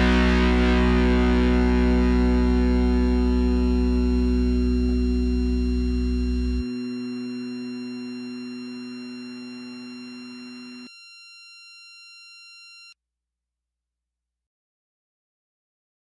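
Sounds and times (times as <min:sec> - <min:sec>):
rock band sustained chord: 0:00.0 - 0:07.3.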